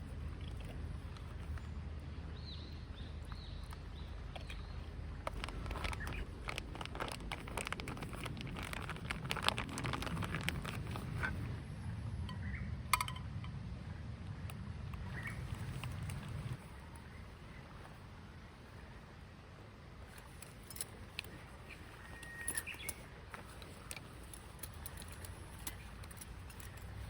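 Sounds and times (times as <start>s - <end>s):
low outdoor background: 0.0s - 27.0s
cooking gear clicks and knocks: 22.0s - 27.0s.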